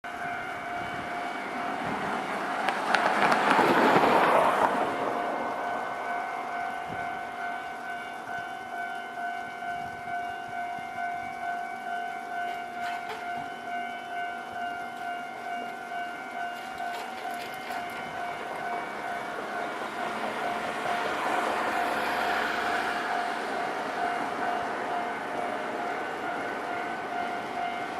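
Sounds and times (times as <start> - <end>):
electronic two-tone crossing bell: 0.1 - 2.4, 5.2 - 27.9.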